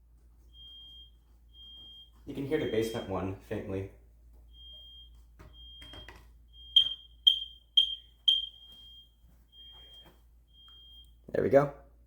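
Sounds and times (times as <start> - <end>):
faint distant alarm beep: 0.4 - 3.5, 4.4 - 11.3
smoke alarm high-pitched beeps: 0.5 - 3.2, 4.5 - 11.2
loud sharp alarm beeps: 4.6 - 11.1.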